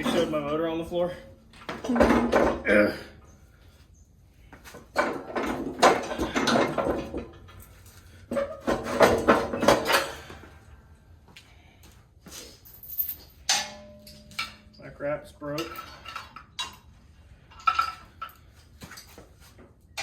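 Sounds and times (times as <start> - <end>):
hard objects knocking and clattering: 1.6 - 2.7, 4.8 - 7.6, 8.3 - 10.5.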